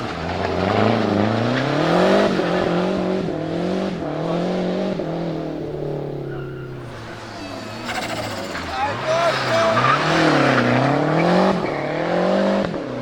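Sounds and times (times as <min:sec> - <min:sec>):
car engine revving hard: 0:00.0 - 0:13.0.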